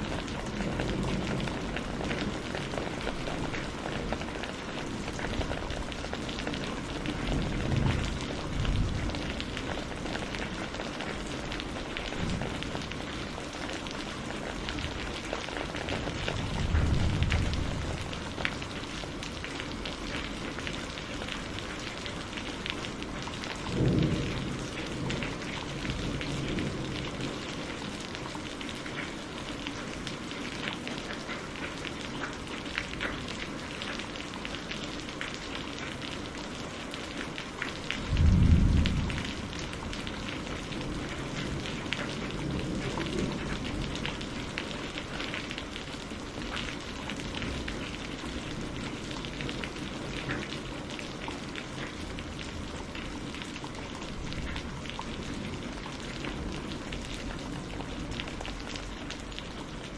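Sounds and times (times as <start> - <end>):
thunderclap rumbling: 0.0 - 4.5, 5.1 - 12.8, 15.8 - 18.6, 23.6 - 27.4, 38.0 - 44.0
steady rain falling: 0.0 - 59.9.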